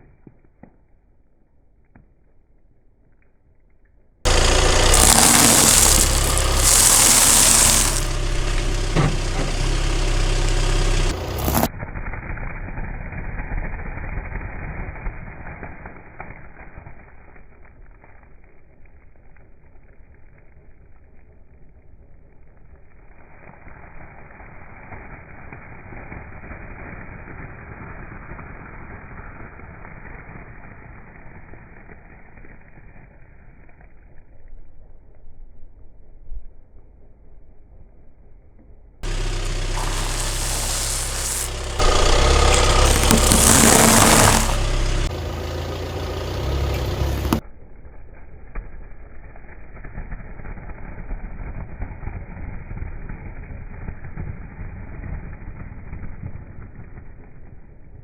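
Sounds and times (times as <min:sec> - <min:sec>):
car engine running: 0:04.3 - 0:11.7, 0:39.0 - 0:47.4.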